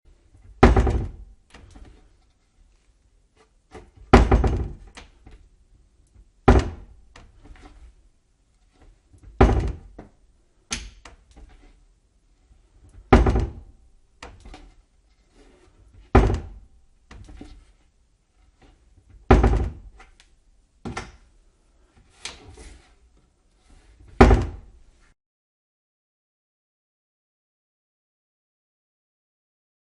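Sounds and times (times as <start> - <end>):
cabinet door shutting: 3.8 - 5.1, 6.5 - 7.8, 9.2 - 10.1, 13.0 - 13.6, 16.0 - 17.6, 19.1 - 20.0, 24.1 - 24.7.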